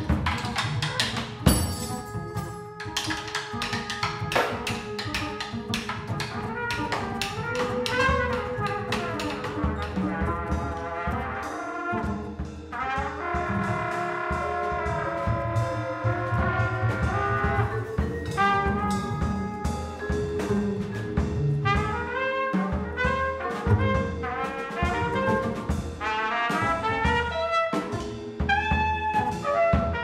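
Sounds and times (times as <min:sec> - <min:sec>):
double bass: 0:00.0 - 0:30.0
jazz band playing: 0:00.0 - 0:30.0
cymbal and drum strikes: 0:01.4 - 0:02.6.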